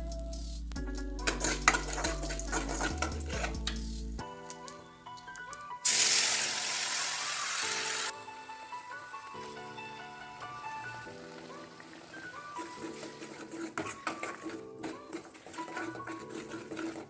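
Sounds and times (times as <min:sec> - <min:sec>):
background music: 0:00.0 - 0:17.0
utensil stirring in a pan: 0:00.8 - 0:04.2, 0:10.6 - 0:17.0
food sizzling in hot oil: 0:05.8 - 0:08.2, 0:08.8 - 0:13.1.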